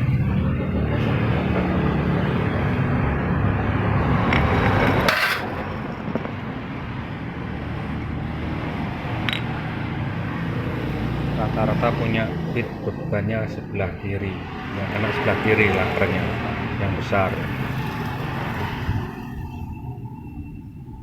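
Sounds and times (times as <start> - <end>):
sharp metallic clank: 5.0 - 5.6.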